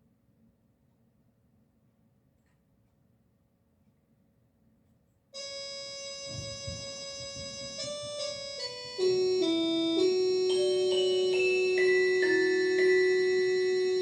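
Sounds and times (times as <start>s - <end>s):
organ-like keyboard chords: 5.4s - 14.0s.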